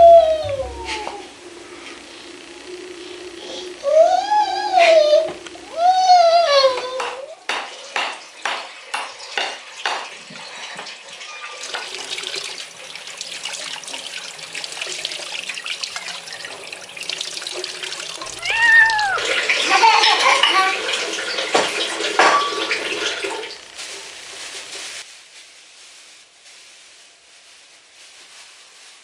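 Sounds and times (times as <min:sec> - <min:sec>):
water running from a tap: 0:06.1 - 0:24.7.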